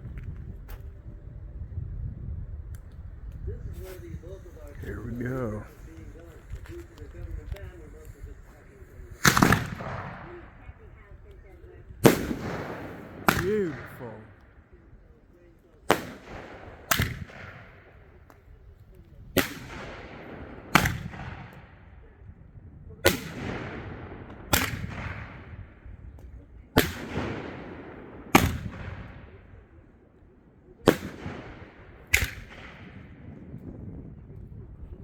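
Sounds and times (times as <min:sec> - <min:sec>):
fireworks bangs with echo: 0:04.7 - 0:10.7, 0:12.0 - 0:14.6, 0:15.9 - 0:18.4, 0:19.2 - 0:22.0, 0:23.0 - 0:26.1, 0:26.8 - 0:29.7, 0:30.8 - 0:33.9.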